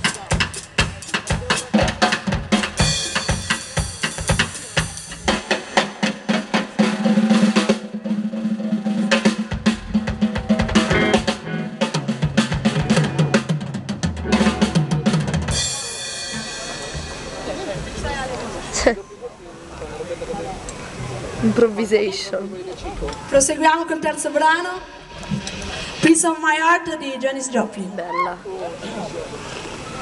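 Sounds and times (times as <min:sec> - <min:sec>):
drum kit playing fast: 0:00.0 - 0:18.2
low bass notes: 0:09.6 - 0:18.6.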